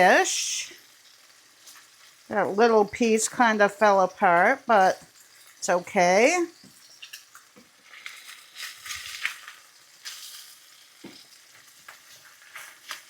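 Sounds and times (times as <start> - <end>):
fish sizzling in oil: 0.0 - 13.0
utensil scraping a pan: 7.8 - 13.0.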